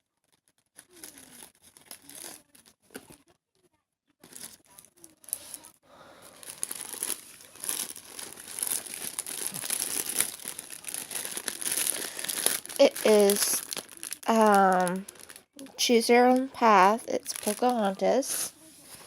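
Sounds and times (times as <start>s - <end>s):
packaging crinkling and tearing: 0.2s - 3.2s, 4.2s - 19.0s.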